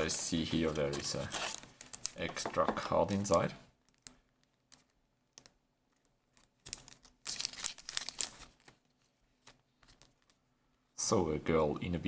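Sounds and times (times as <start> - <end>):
packaging crinkling and rustling: 5.9 - 10.4.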